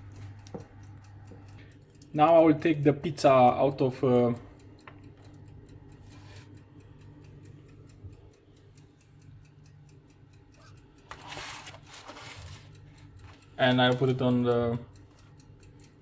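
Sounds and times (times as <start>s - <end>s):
clockwork timer ticking: 0.0s - 16.0s
low steady hum: 0.0s - 16.0s
rustling clatter: 11.2s - 12.7s.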